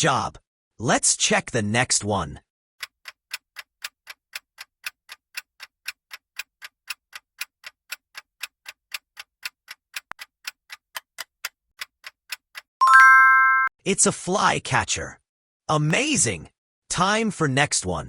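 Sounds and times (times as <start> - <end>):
clock ticking: 2.8 - 12.7.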